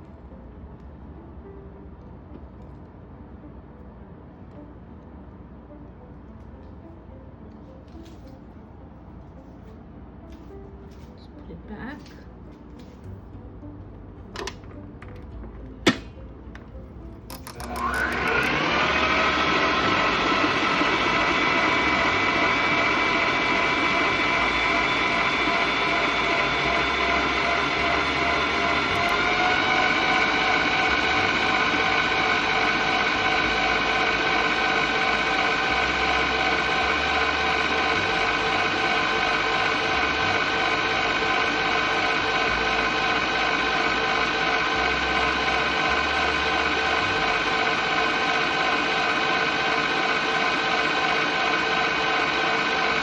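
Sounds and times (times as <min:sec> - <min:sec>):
stand mixer motor whining: 0:17.3 - 0:53.0.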